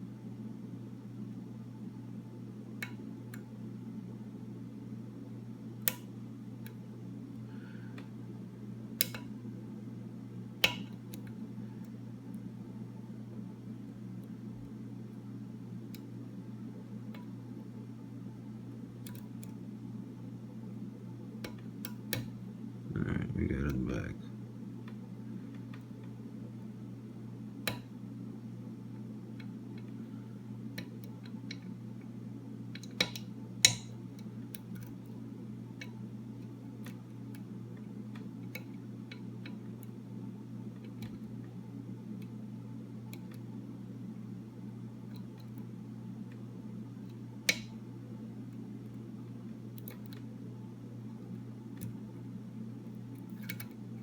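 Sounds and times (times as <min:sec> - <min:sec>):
steady low hum: 0:22.6 - 0:24.5.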